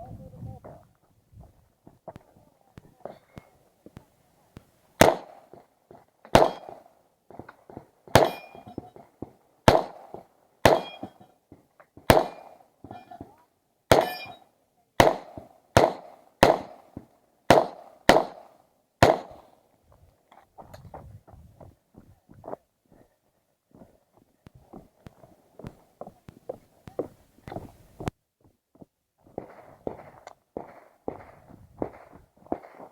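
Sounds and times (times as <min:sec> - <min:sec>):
pistol shots with echo: 0:05.0 - 0:05.6, 0:06.3 - 0:07.0, 0:08.1 - 0:08.9, 0:09.6 - 0:11.2, 0:12.1 - 0:12.7, 0:13.9 - 0:14.4, 0:15.0 - 0:19.5, 0:29.4 - 0:32.9
steel targets ringing: 0:08.2 - 0:08.9, 0:10.7 - 0:11.3, 0:13.9 - 0:14.5.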